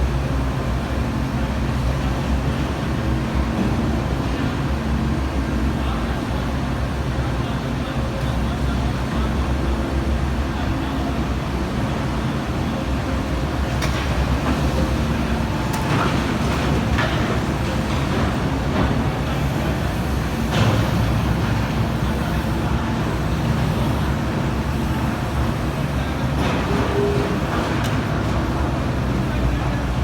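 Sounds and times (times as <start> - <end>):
excavator diesel engine running: 6.3 - 30.0.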